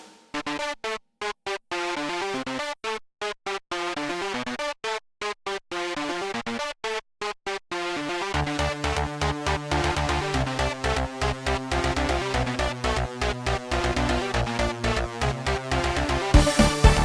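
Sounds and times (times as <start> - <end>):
synthesizer melody: 7.7 - 17.0.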